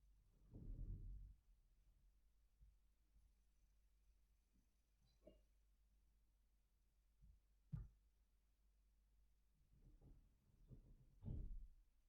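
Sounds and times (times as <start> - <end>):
faint low bumps and rustles: 9.8 - 11.8.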